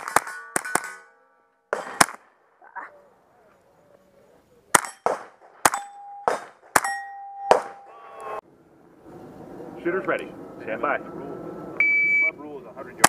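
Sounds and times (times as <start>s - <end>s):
steel target plates ringing: 0.0s - 2.0s, 4.8s - 8.0s.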